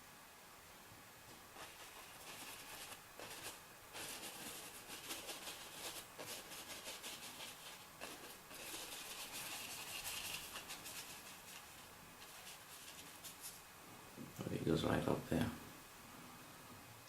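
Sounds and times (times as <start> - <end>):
paintbrush scratchy strokes: 1.5 - 13.6.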